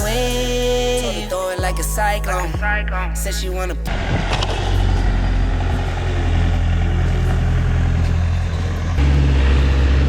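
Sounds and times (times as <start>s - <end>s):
heavy diesel engine running: 3.9s - 10.0s.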